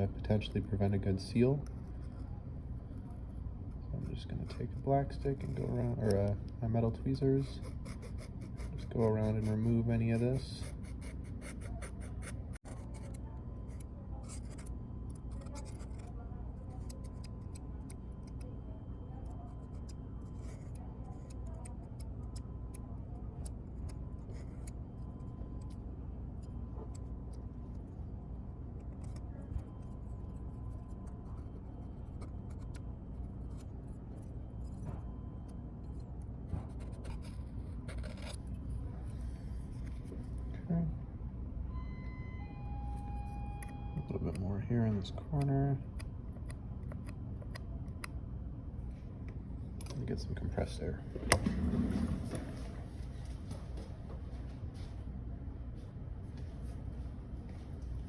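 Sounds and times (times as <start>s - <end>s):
steady low hum: 0.0s - 58.0s
faint high tone: 41.6s - 44.6s.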